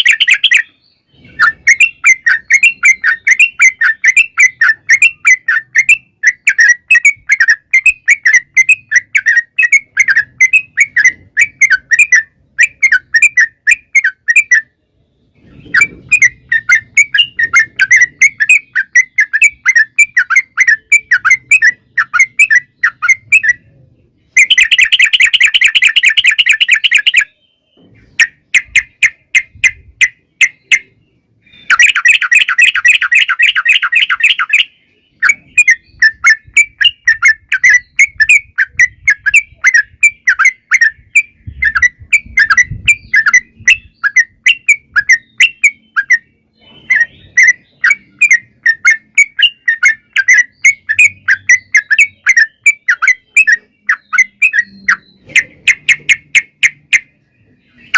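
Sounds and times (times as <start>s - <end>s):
bulbul singing: 0.0s - 57.9s.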